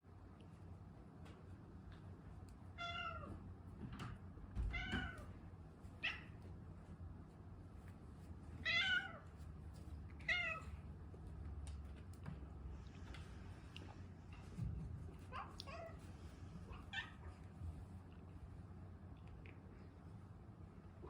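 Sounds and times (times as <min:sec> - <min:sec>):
cat meowing: 0:02.8 - 0:03.4, 0:04.6 - 0:05.3, 0:08.6 - 0:09.2, 0:10.2 - 0:10.8.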